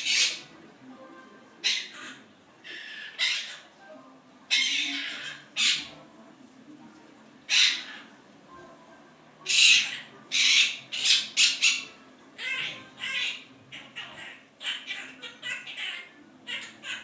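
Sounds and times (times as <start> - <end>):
parrot squawking: 0.0 - 0.5, 1.6 - 3.8, 4.5 - 6.0, 7.5 - 8.2, 9.4 - 17.0.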